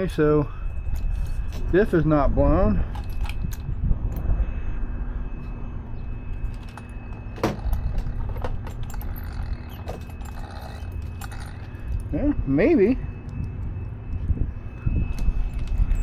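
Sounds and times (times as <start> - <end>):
faint hum: 0.0 - 16.0
low rumble: 0.0 - 16.0
small parts clicking and rattling: 2.9 - 4.3, 6.4 - 12.2.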